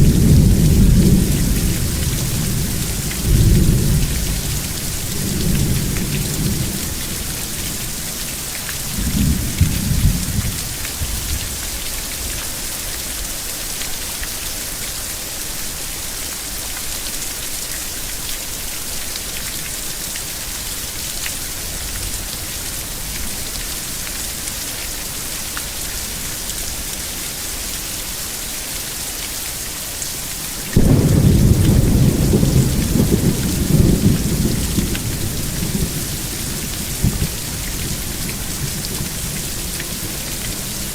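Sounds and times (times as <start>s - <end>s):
heavy rain hissing: 0.0s - 40.9s
thunder rumbling: 30.8s - 40.9s.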